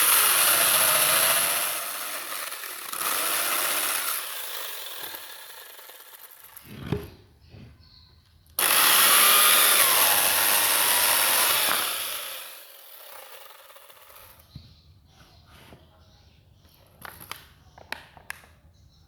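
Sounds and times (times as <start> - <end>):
power tool whining on wood: 0.0 - 7.1, 8.6 - 14.4.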